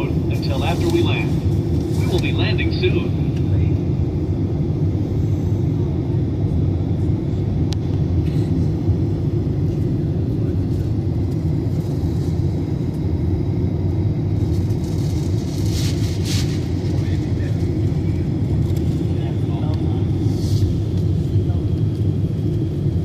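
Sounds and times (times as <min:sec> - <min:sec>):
airliner engine rumble: 0:00.0 - 0:23.0.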